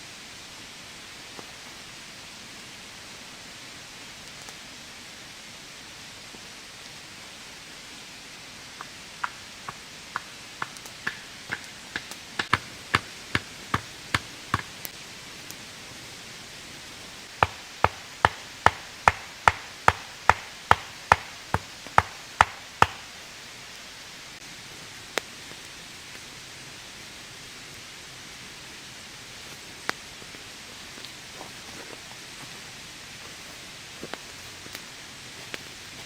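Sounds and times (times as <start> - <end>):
rain hissing: 0.0 - 36.0
sharp knocking strikes: 17.4 - 23.1.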